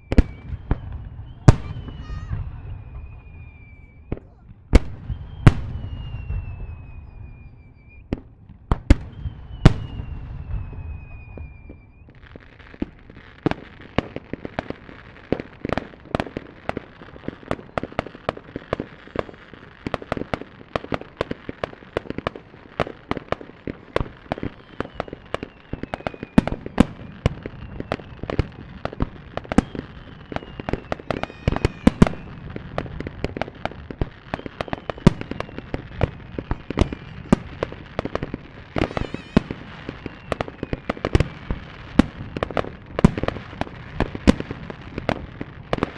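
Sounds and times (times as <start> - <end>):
falling firework whistles: 0.0 - 45.9
firework shells bursting: 29.4 - 43.4.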